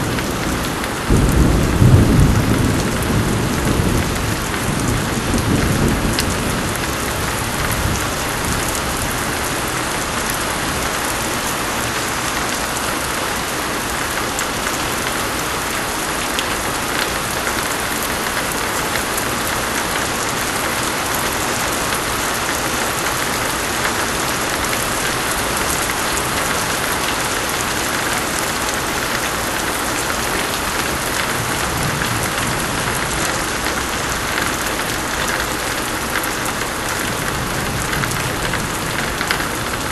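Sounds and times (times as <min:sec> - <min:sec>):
low thunder rumble: 0:00.0 - 0:10.2
heavy rain pouring: 0:00.0 - 0:39.9.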